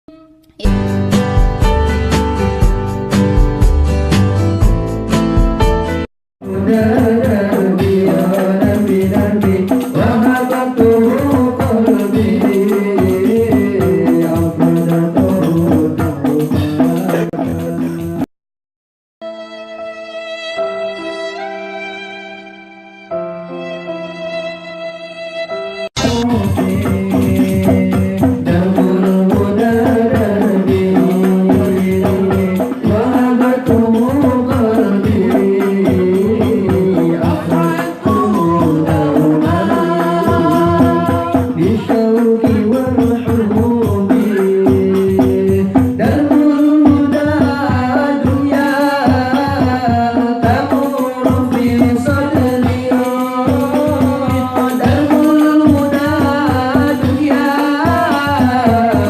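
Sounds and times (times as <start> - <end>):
sung melody with held notes: 0.1 - 6.0, 19.2 - 26.8
frame drums beating fast rhythm: 0.6 - 18.3, 26.0 - 59.0.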